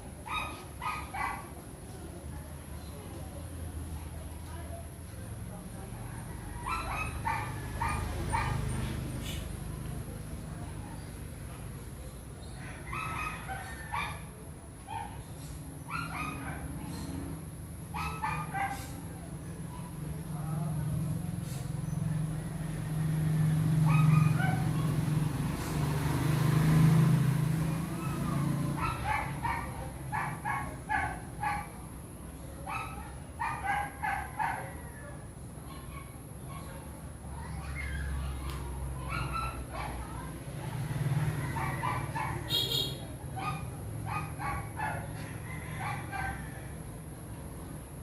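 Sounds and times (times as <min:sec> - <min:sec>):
dog barking: 0:00.2 - 0:01.6, 0:06.2 - 0:09.3, 0:12.4 - 0:17.1, 0:17.9 - 0:20.0, 0:21.3 - 0:31.8, 0:32.6 - 0:46.8.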